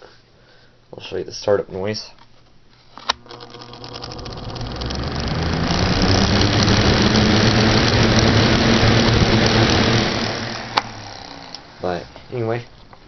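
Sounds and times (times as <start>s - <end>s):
fan motor hum and air rush: 3.1s - 13.0s.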